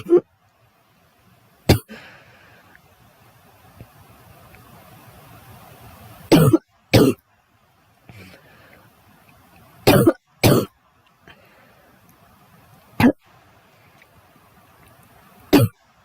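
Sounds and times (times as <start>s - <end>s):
girl coughing: 0.0s - 0.2s, 6.3s - 7.2s, 9.9s - 10.7s, 15.6s - 15.8s.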